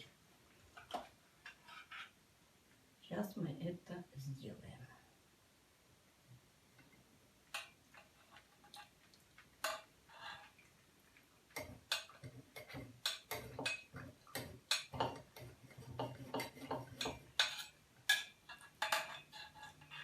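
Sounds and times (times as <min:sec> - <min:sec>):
dishes and utensils clinking: 0:09.6 - 0:10.6, 0:11.5 - 0:20.0.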